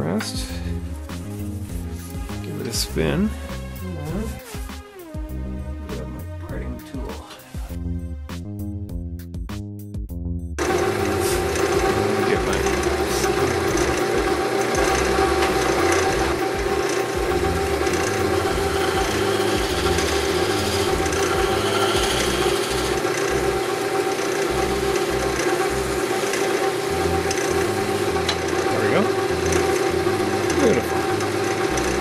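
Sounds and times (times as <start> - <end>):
wood lathe motor humming: 0.6 - 2.4, 10.6 - 32.0.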